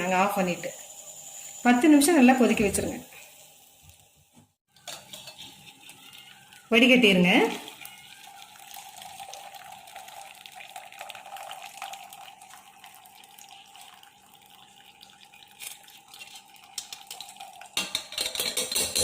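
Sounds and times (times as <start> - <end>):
coffee trickling through strainer: 0.0 - 19.0
metal vessels clinking: 4.7 - 12.0, 15.4 - 19.0.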